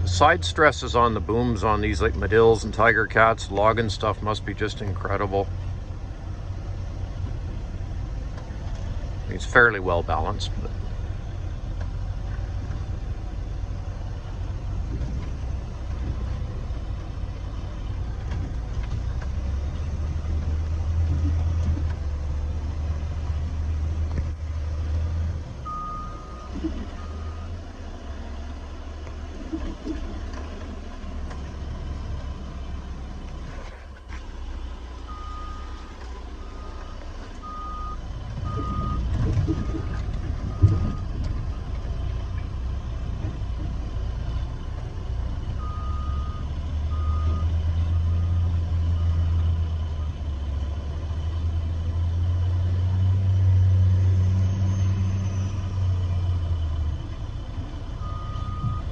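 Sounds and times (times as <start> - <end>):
heavy diesel machinery drone: 0.0 - 58.9
backup alarm beeping: 36.4 - 39.9, 40.5 - 41.1, 58.0 - 58.9.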